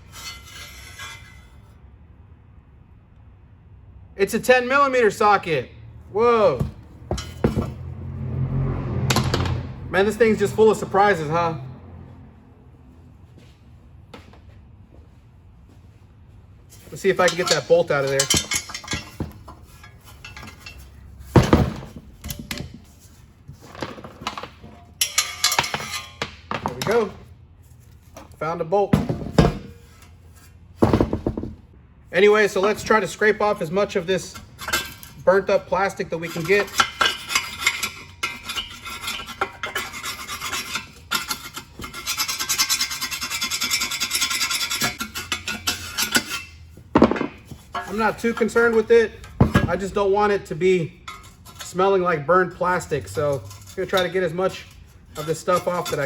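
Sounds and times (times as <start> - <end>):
loud metallic clank: 6.6 - 9.9
scraping plastic off metal tubes: 52.7 - 56.0.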